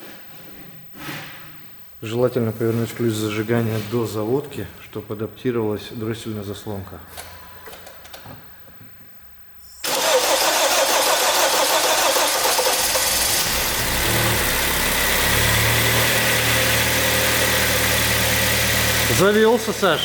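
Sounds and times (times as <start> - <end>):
car engine starting and idling: 9.8 - 20.0.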